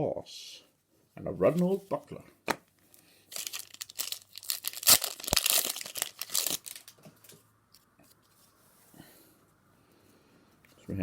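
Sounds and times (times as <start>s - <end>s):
plastic wrapper tearing and crinkling: 3.3s - 7.0s.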